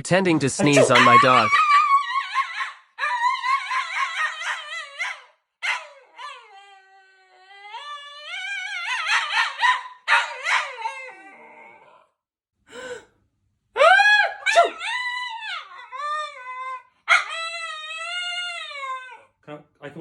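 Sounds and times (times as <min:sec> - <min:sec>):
dog howling and yowling: 0:00.7 - 0:12.1, 0:13.8 - 0:19.4.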